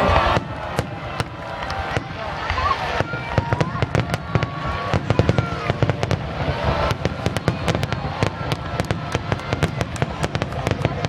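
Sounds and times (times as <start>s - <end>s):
fireworks cracking: 0.0s - 11.0s
low rumble of fireworks: 0.0s - 11.0s.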